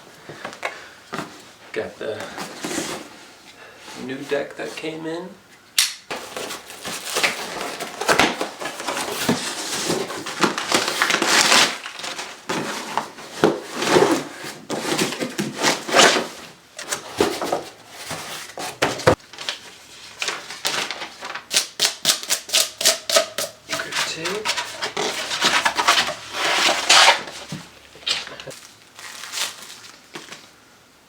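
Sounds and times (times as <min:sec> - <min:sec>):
packaging tearing and crumpling: 0:06.2 - 0:13.0, 0:28.0 - 0:30.5.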